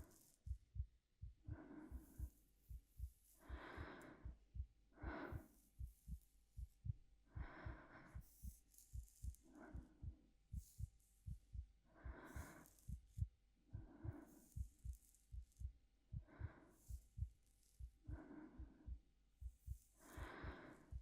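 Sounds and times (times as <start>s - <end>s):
slow breaths: 1.4s - 10.9s, 11.9s - 15.2s, 16.1s - 21.0s
heartbeat double thump: 5.8s - 7.8s.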